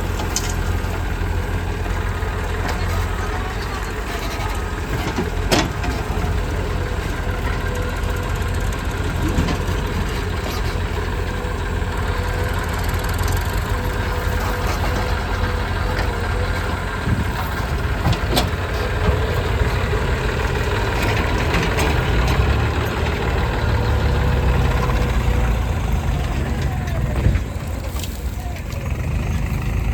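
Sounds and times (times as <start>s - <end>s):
diesel engine running: 0.0s - 29.9s.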